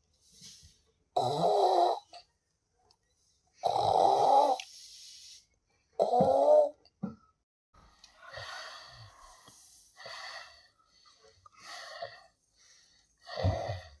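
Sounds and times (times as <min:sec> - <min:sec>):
person snoring: 0:01.2 - 0:02.1, 0:03.6 - 0:04.6.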